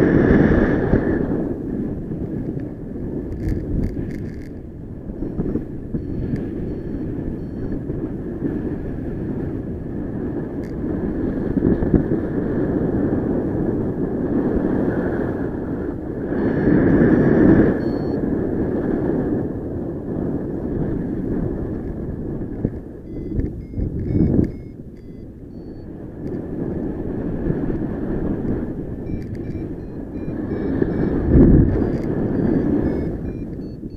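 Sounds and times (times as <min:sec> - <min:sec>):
wind rushing over microphone: 0:00.0 - 0:33.9
faint high beeps: 0:05.2 - 0:07.9, 0:17.8 - 0:18.2, 0:23.0 - 0:25.9, 0:29.0 - 0:33.9.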